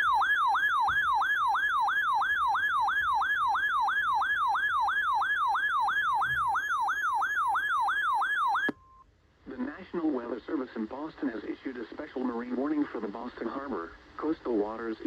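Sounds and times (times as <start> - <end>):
electronic yelp alert tone: 0.0 - 8.8.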